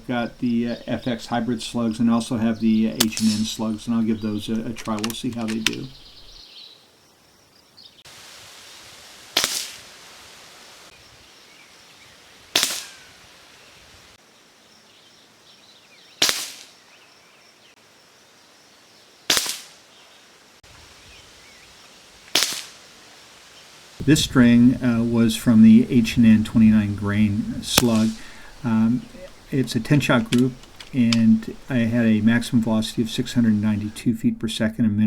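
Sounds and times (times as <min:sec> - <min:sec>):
air rifle shots: 0:03.0 - 0:03.7, 0:09.3 - 0:10.0, 0:12.5 - 0:13.3, 0:16.2 - 0:16.8, 0:19.3 - 0:19.8, 0:22.3 - 0:22.8, 0:27.6 - 0:29.6.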